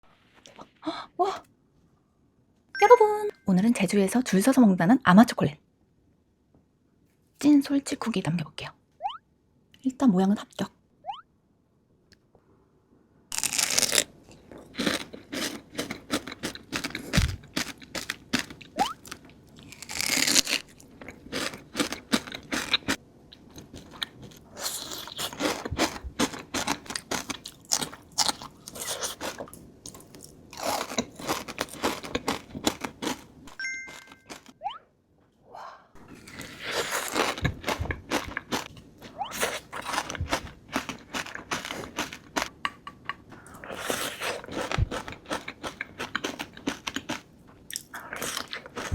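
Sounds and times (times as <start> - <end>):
crunchy cookie chewing: 13.3 - 34.5, 36.1 - 48.9.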